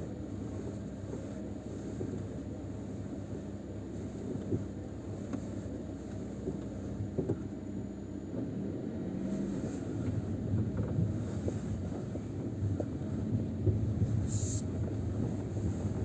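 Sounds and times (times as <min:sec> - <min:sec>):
car engine idling: 0:08.7 - 0:16.0.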